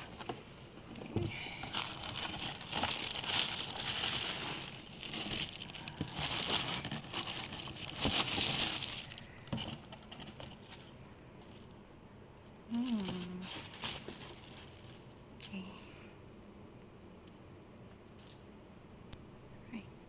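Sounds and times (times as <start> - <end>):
packaging crinkling and rustling: 0.0 - 11.8, 12.7 - 15.1.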